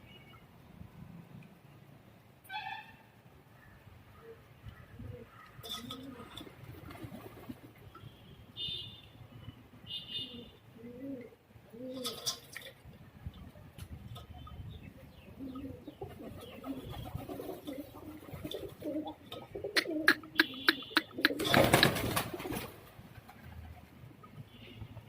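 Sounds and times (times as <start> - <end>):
pigeons cooing: 4.2 - 7.8, 10.2 - 12.6, 14.2 - 22.7.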